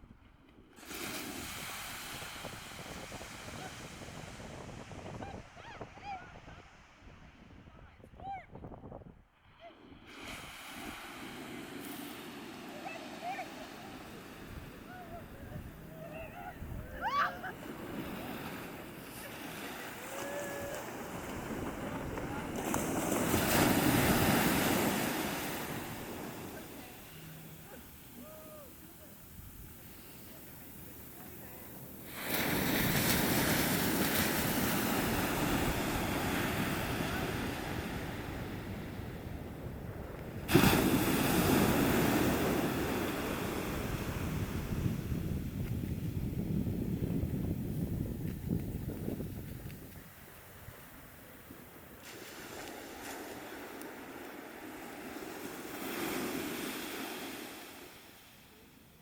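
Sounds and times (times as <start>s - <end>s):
surf washing on beach: 0.0s - 8.3s, 9.4s - 59.0s
wind buffeting microphone: 1.4s - 11.0s, 20.0s - 26.6s, 32.4s - 51.8s.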